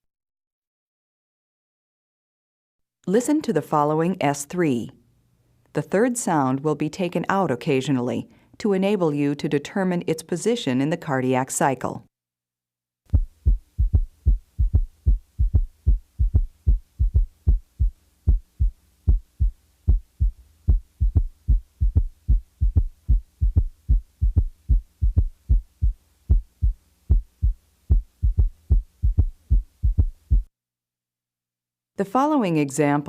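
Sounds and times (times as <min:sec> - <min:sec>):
heartbeat gallop rhythm: 0:13.1 - 0:30.5.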